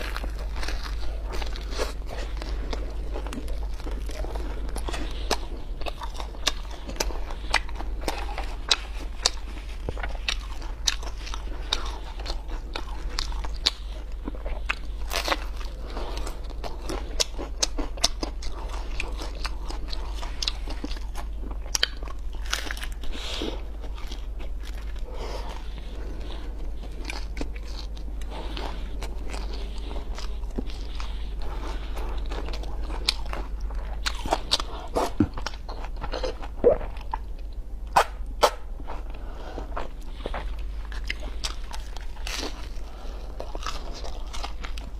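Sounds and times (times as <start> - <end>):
crunchy eating and chewing: 0.0 - 44.9
steady low hum: 0.0 - 44.9.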